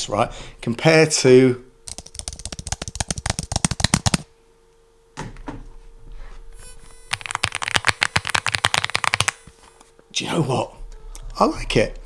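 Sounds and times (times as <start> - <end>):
mechanical keyboard typing: 1.9 - 4.3, 7.1 - 9.4.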